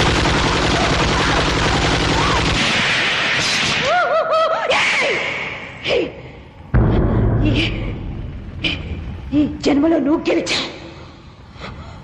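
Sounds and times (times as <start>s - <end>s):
loud rapid rattle: 0.0s - 3.8s.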